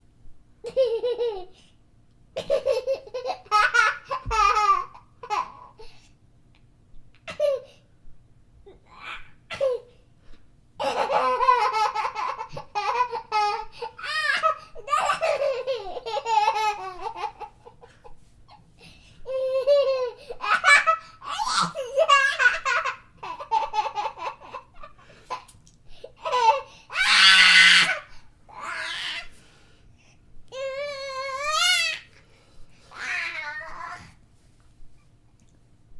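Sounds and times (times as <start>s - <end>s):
young child laughing: 0.6s - 1.7s, 2.4s - 5.9s, 7.2s - 7.8s, 10.8s - 28.1s.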